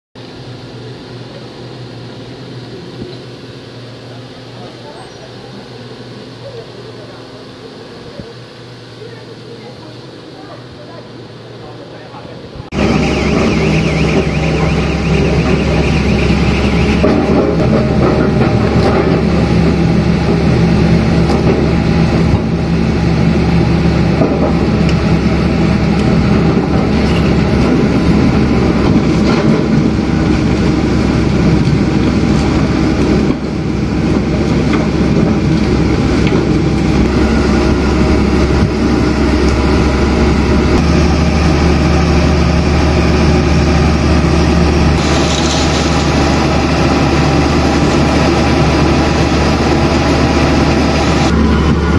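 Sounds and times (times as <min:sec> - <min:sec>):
drilling rig engine droning: 0:11.1 - 0:51.9.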